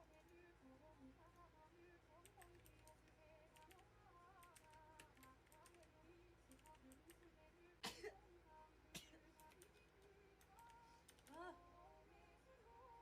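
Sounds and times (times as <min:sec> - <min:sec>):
faint keyboard typing: 0:00.0 - 0:00.6, 0:01.2 - 0:07.4, 0:09.3 - 0:11.6.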